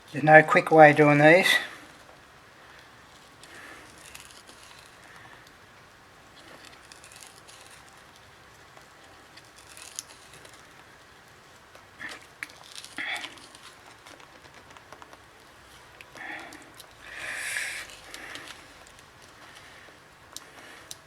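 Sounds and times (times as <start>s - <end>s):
plastic card scratching under glass: 3.2s - 5.5s, 6.4s - 10.8s, 12.1s - 16.0s, 16.6s - 19.7s.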